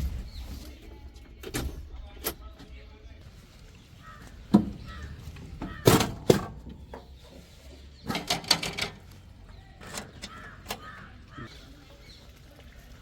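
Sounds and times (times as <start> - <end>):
plastic toy vehicles clicking: 8.1 - 11.1.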